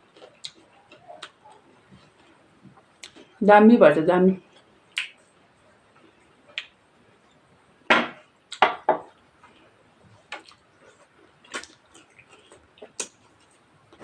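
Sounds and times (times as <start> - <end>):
loud crackly eating noises: 0.0 - 3.4, 8.4 - 14.0.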